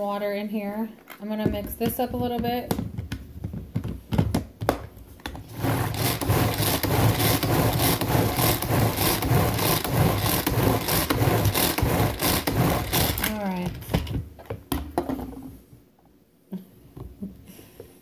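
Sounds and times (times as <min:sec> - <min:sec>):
pull-cord mixer whirring: 0:05.5 - 0:13.4.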